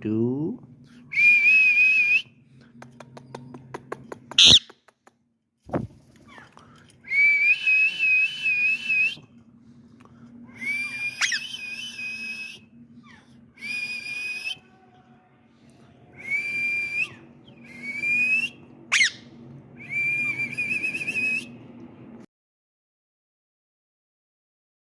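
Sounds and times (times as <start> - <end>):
parrot whistling: 1.1 - 2.2, 4.4 - 4.7, 7.1 - 9.2, 10.5 - 14.7, 16.2 - 21.6
parrot sharp sweeping squeaks: 4.4 - 4.7, 18.9 - 19.3.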